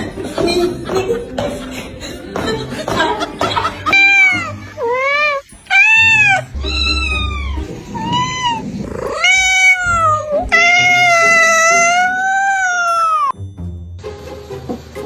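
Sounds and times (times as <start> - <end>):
cat meowing: 3.8 - 13.4.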